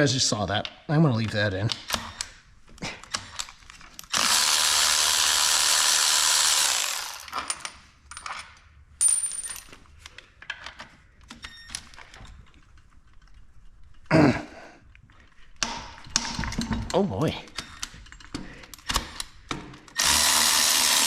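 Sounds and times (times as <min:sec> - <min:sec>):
power tool running: 0:04.1 - 0:07.4, 0:20.0 - 0:21.0
metallic clicks and knocks: 0:15.6 - 0:20.0.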